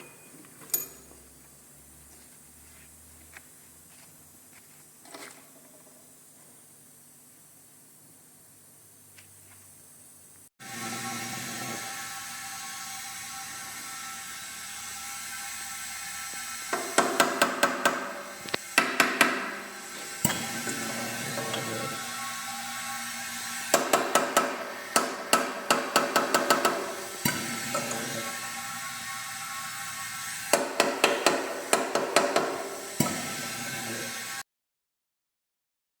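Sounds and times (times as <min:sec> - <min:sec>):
workshop hum: 0:00.0 - 0:34.4
sharp tool taps: 0:30.5 - 0:33.2.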